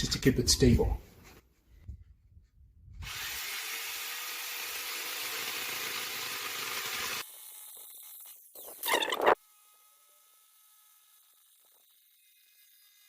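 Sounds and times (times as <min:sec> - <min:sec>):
jigsaw cutting chipboard: 0:03.0 - 0:13.0.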